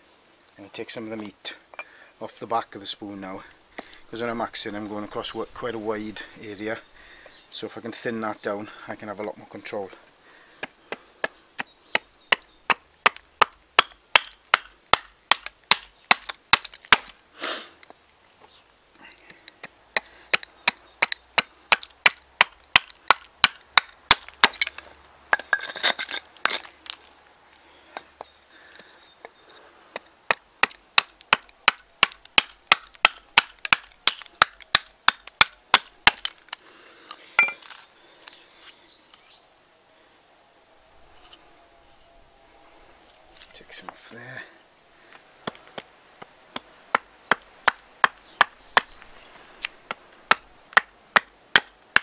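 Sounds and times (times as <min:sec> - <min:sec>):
axe chopping wood: 0:10.6 - 0:17.2, 0:19.6 - 0:27.1, 0:30.3 - 0:36.5, 0:45.4 - 0:49.1, 0:49.9 - 0:52.0.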